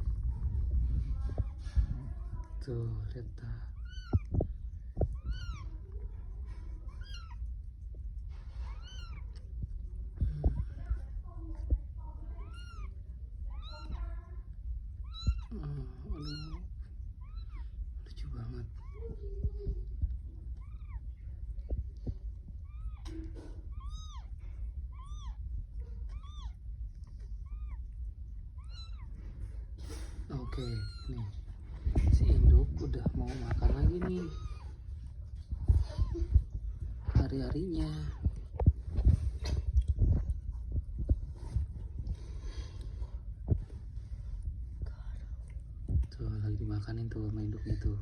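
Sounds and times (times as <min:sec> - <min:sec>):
low rumble: 0:00.0 - 0:48.0
kitten mewing: 0:03.7 - 0:07.6, 0:08.6 - 0:09.6, 0:12.3 - 0:14.4, 0:15.0 - 0:17.8, 0:18.7 - 0:19.8, 0:20.4 - 0:21.7, 0:22.6 - 0:26.6, 0:27.4 - 0:29.2, 0:29.8 - 0:31.5, 0:33.0 - 0:34.9.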